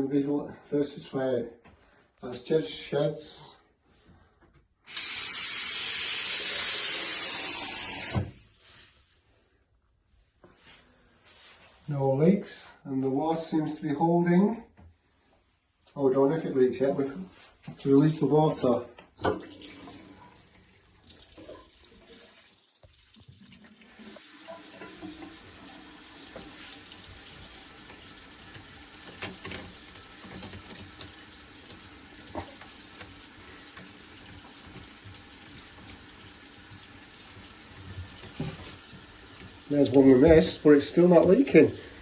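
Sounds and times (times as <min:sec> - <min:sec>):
water draining from basin: 0:19.2 - 0:41.5.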